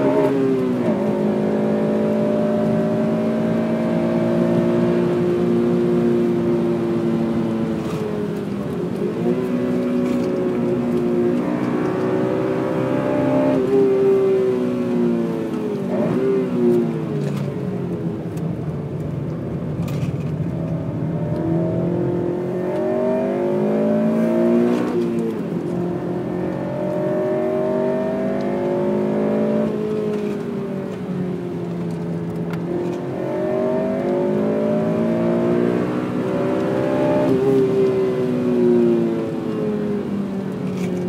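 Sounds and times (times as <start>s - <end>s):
car engine revving hard: 0.0s - 8.2s, 9.1s - 17.0s, 21.2s - 30.4s, 31.9s - 39.2s.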